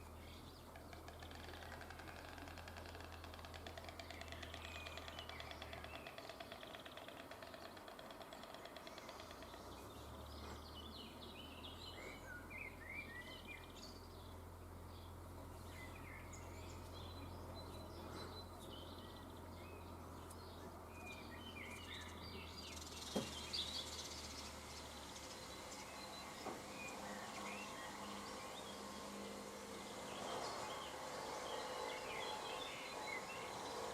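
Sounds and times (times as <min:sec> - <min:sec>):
small birds chirping: 0:00.0 - 0:33.9
stork clattering its bill: 0:00.7 - 0:09.8.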